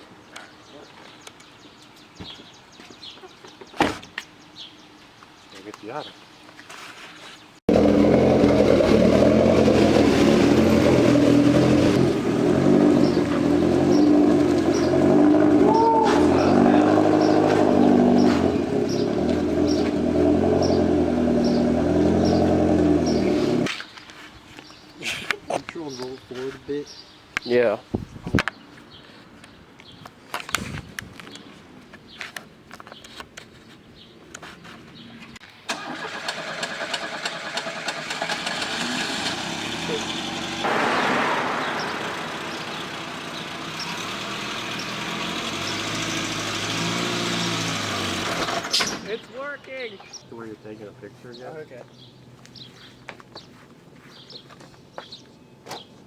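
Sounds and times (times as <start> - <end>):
vehicle engine idling: 7.7 - 23.7, 36.4 - 48.7
rush of noise: 40.6 - 44.2.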